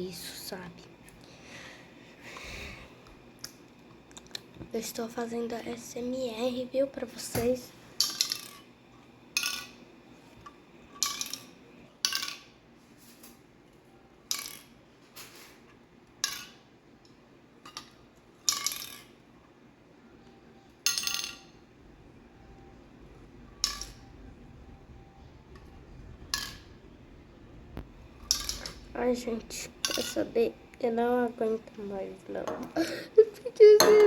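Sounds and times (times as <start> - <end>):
tapping and clinking on hard object: 33.8 - 34.0.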